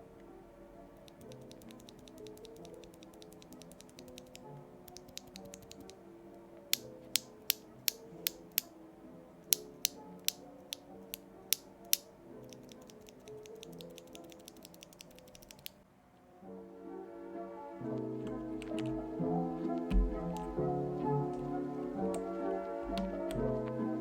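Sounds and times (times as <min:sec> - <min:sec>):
soft background music: 0:00.0 - 0:24.0
mechanical keyboard clicking: 0:01.0 - 0:06.0, 0:06.7 - 0:08.7, 0:09.5 - 0:15.8, 0:18.2 - 0:19.0.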